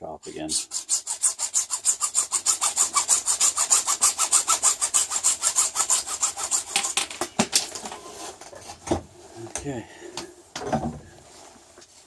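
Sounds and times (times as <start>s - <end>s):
hand saw cutting: 0.3s - 7.2s.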